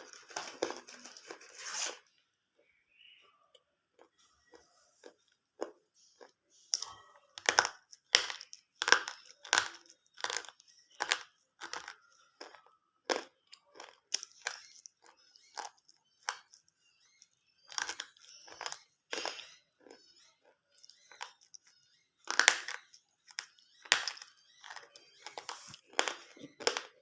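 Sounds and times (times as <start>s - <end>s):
slate pencils crunched by teeth: 6.2s - 16.7s, 17.7s - 20.0s, 20.8s - 27.0s.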